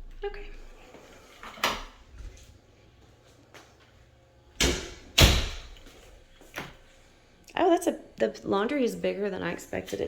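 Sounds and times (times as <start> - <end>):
loud door knocks: 4.6 - 5.7.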